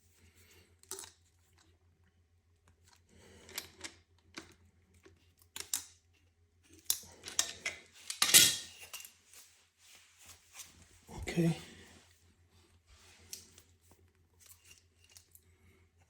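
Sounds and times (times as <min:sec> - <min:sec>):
metal parts clicking and rattling: 0:06.7 - 0:09.2.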